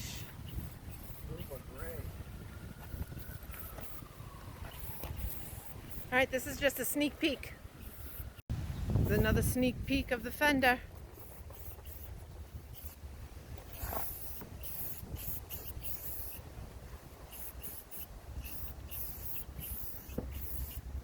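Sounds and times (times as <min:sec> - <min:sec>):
wind on microphone: 0:00.0 - 0:21.0
spray can hissing bursts: 0:13.7 - 0:16.4, 0:17.3 - 0:20.9.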